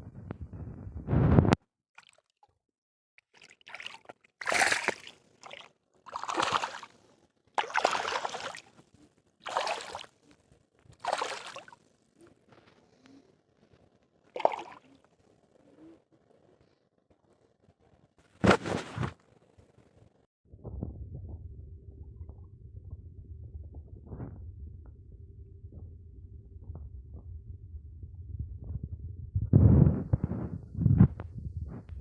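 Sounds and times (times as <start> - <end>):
water splashing: 3.3 - 7.0, 7.6 - 8.7, 9.4 - 10.2, 11.0 - 11.8, 14.4 - 14.9
loud low rumble: 20.5 - 32.0.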